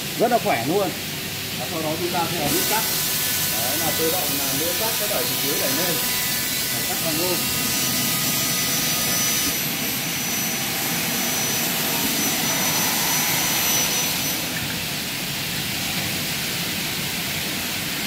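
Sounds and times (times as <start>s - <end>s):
thin high whine: 1.8s - 14.8s.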